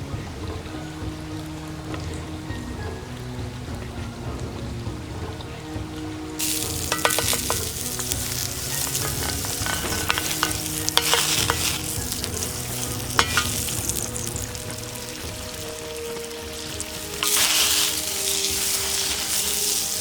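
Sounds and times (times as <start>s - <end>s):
food frying and sizzling: 0.0s - 20.0s
utensil scraping cookware: 6.4s - 14.6s, 17.0s - 20.0s.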